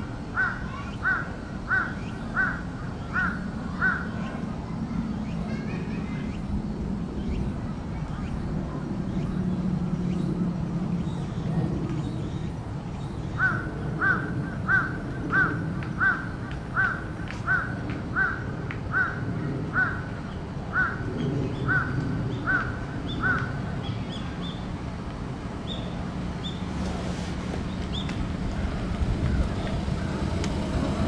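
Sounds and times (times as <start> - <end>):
crow cawing: 0.4 - 2.6, 13.4 - 20.0, 20.7 - 21.0.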